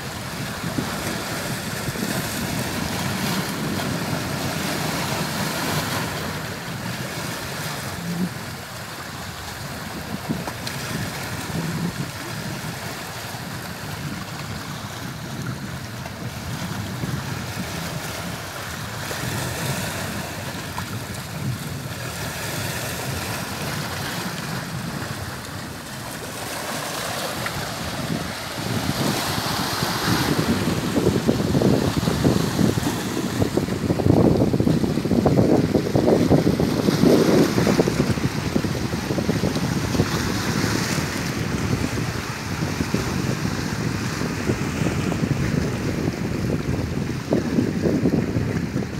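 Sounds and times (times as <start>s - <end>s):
sea waves washing onto shore: 0.0s - 48.9s
wind on microphone: 0.0s - 48.9s.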